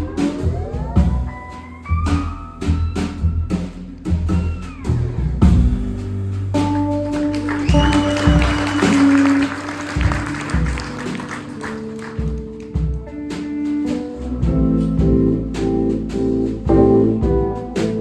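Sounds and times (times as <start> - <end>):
bass line: 0.0 - 18.0
drum hits: 5.4 - 18.0.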